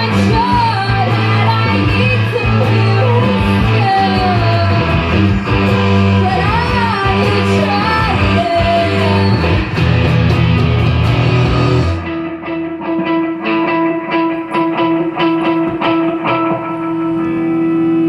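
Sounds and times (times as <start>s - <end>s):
person singing: 0.0s - 10.0s
bass guitar: 0.0s - 18.0s
drums: 0.0s - 18.0s
electric guitar: 0.0s - 18.0s.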